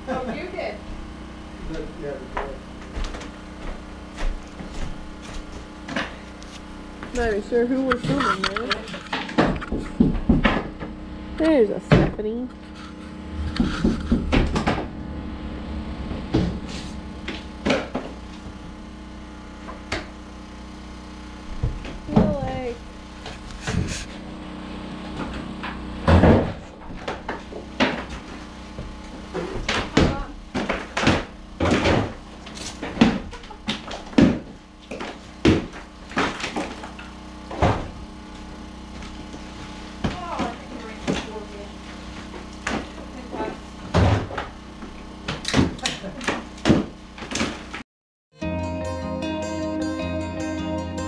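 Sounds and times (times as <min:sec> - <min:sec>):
low hum: 0:00.0 - 0:45.1
demolition knocks and crashes: 0:26.1 - 0:38.0
demolition knocks and bangs: 0:32.8 - 0:36.8.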